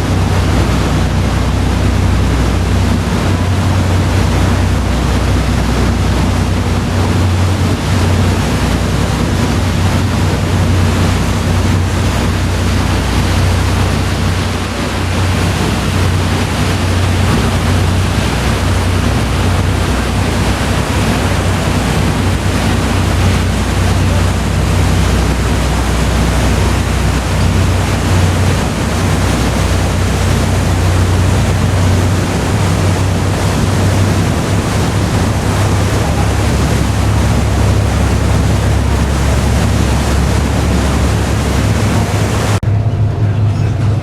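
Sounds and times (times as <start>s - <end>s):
ship engines droning: 0.0s - 44.0s
water and wind rushing: 0.0s - 44.0s.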